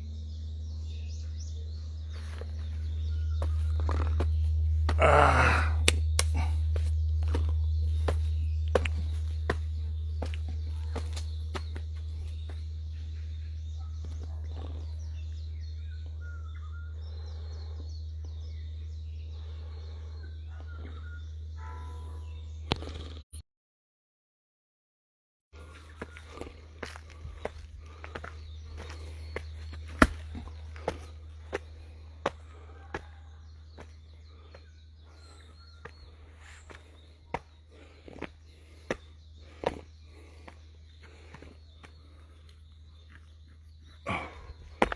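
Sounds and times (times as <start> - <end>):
large bell humming: 0.0 - 22.8
birds chirping: 0.0 - 23.2, 25.6 - 44.9
sharp footsteps or taps: 3.4 - 12.6, 26.0 - 32.4.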